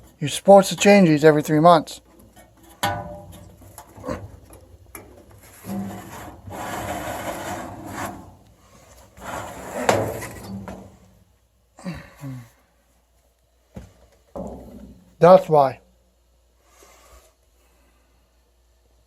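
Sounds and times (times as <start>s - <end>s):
filter scraping and rubbing: 5.2s - 10.7s.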